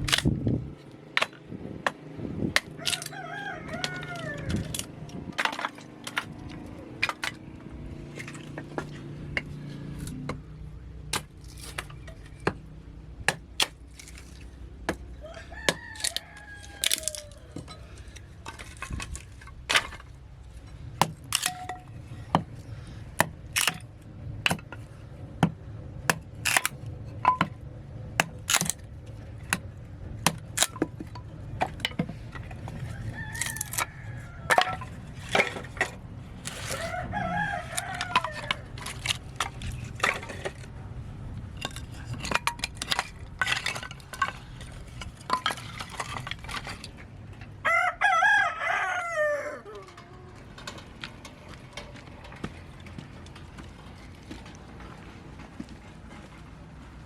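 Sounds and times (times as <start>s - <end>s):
rooster crowing: 2.8s - 4.8s, 15.2s - 18.0s, 32.8s - 34.8s, 36.6s - 38.7s, 47.6s - 50.4s
chickens clucking: 49.2s - 50.7s.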